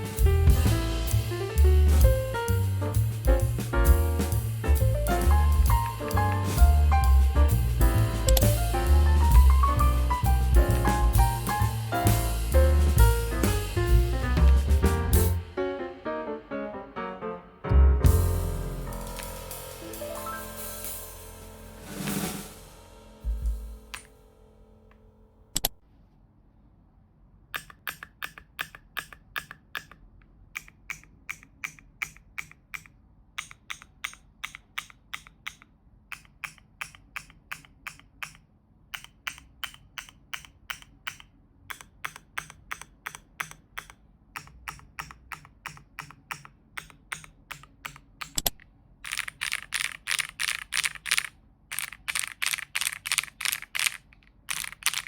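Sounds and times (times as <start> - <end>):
mechanical keyboard typing: 39.0 - 55.0.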